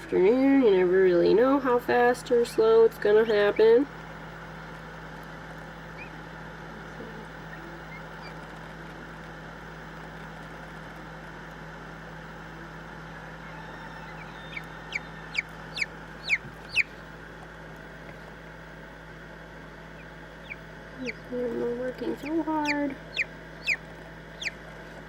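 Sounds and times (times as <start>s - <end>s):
steady background hum: 0.0s - 25.0s
chicks peeping: 5.2s - 6.5s, 7.3s - 9.2s, 13.0s - 17.2s, 19.8s - 25.0s.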